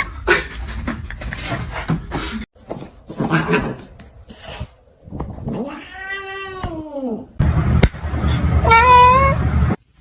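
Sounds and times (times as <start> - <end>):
cat meowing: 5.6 - 7.2, 8.6 - 9.4.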